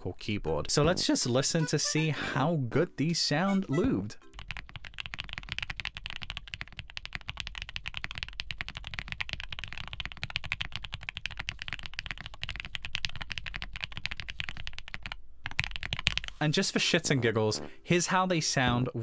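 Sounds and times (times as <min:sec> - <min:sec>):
fast mechanical keyboard typing: 0:04.2 - 0:16.4.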